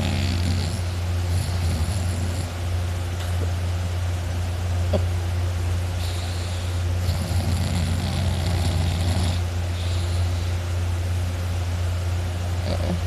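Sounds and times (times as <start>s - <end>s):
person snoring: 0.0s - 2.5s.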